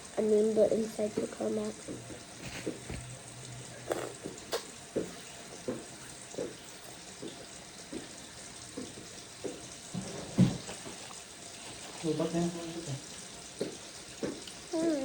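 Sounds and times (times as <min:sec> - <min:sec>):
wet chewing with soft clicks: 0:03.9 - 0:08.2, 0:13.6 - 0:14.7.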